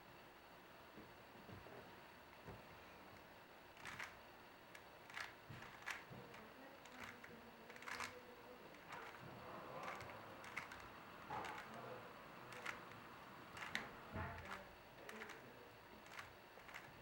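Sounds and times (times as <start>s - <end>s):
puzzle cube plastic clicks: 3.8s - 4.2s, 4.8s - 9.2s, 9.8s - 11.8s, 12.5s - 15.4s, 16.0s - 17.0s.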